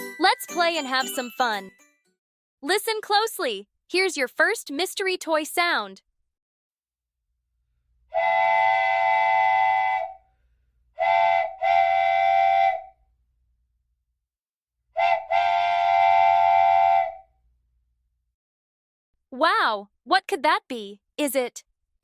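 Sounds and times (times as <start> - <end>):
train whistle blasts: 8.1 - 10.2, 11.0 - 13.0, 15.0 - 17.3.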